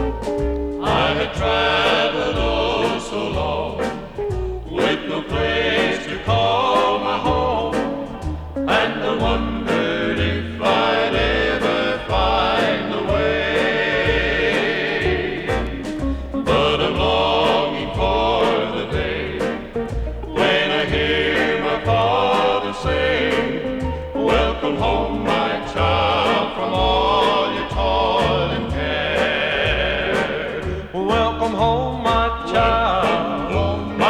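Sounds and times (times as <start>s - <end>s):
gospel singing: 0.0s - 34.0s
steady bass line: 0.0s - 34.0s.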